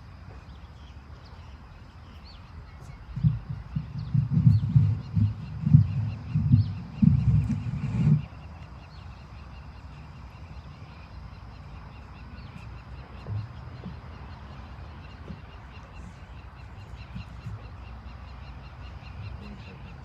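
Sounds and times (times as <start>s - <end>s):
faint thumps and shuffles: 2.6s - 9.0s, 12.4s - 18.0s.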